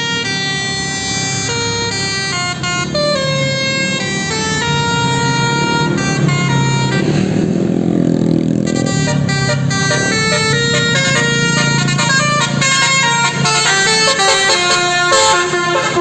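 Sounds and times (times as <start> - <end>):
bus horn playing a melody: 0.0 - 16.0.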